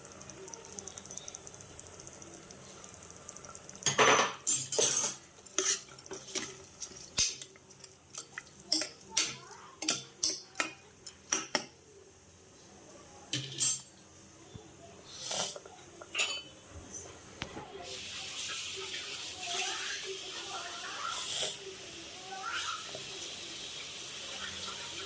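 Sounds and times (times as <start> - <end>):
metal utensils clinking on dishes: 3.8 - 11.8, 13.3 - 13.9, 15.4 - 16.5.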